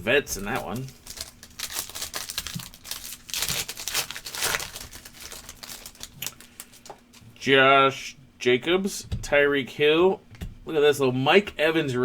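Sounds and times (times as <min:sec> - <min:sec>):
foil wrapper tearing and crinkling: 0:00.4 - 0:07.0.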